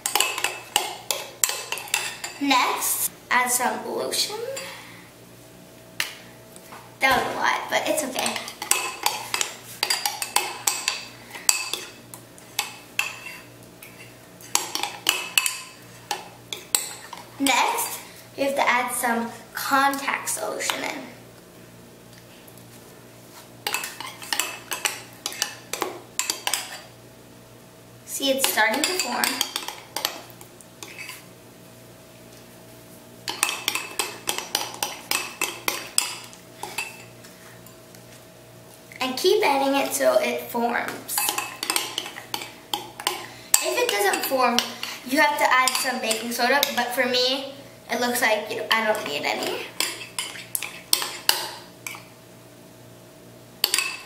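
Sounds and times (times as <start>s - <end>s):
utensil scraping a mixing bowl: 13.0s - 17.2s, 30.8s - 31.3s
utensil clinking against bowl: 41.2s - 44.7s, 53.6s - 54.0s.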